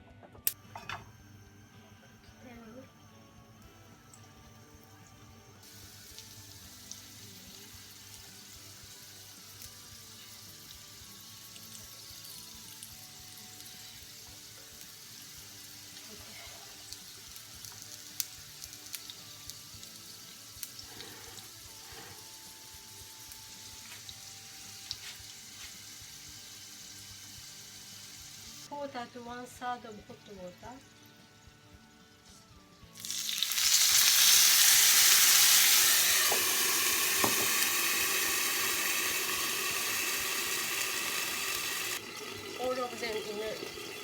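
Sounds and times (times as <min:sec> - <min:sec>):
dumplings sizzling in oil: 0:03.7 - 0:28.8, 0:32.9 - 0:44.0
oil popping and crackling: 0:15.9 - 0:21.5, 0:33.0 - 0:44.0.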